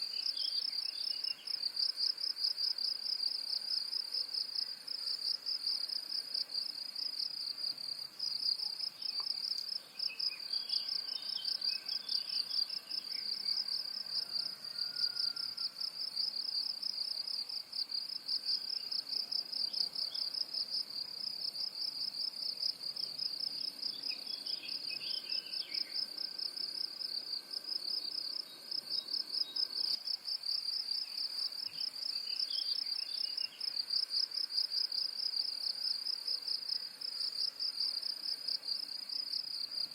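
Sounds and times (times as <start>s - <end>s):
cricket chirping: 0.0s - 39.9s
faint bird chirps: 8.6s - 15.7s, 23.9s - 26.2s, 31.0s - 33.8s.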